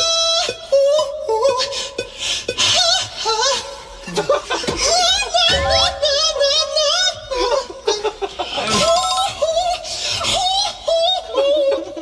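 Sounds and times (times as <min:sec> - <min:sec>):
laughter: 0:04.1 - 0:05.1.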